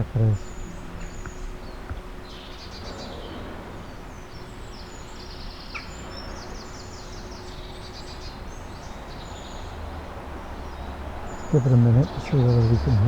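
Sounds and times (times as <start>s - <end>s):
traffic rumble: 0.0s - 4.5s, 8.4s - 13.0s
faint steady hum: 0.0s - 13.0s
songbirds singing: 0.0s - 13.0s.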